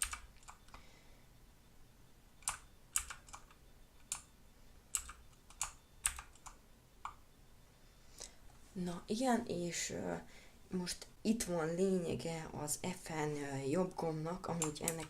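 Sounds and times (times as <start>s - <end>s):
mechanical keyboard key clicks: 2.4s - 4.2s, 4.9s - 7.2s.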